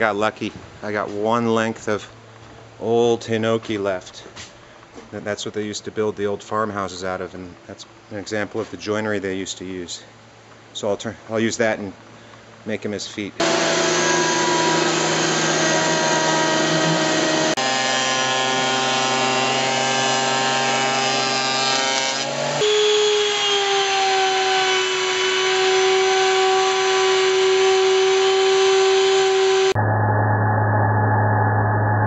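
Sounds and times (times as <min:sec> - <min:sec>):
power tool cutting wood: 0:13.4 - 0:29.8.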